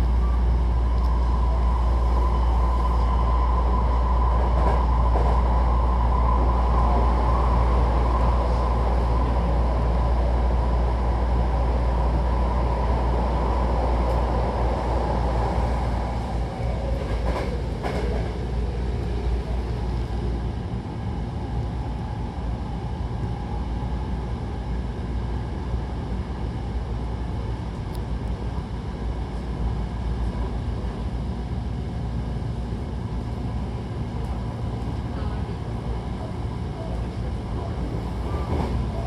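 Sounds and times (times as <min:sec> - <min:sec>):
train wheels rumbling on rails: 0:00.0 - 0:39.0.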